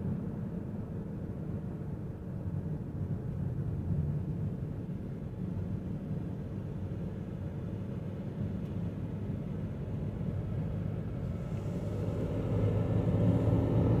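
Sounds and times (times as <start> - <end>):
car driving low hum: 10.0 - 14.0.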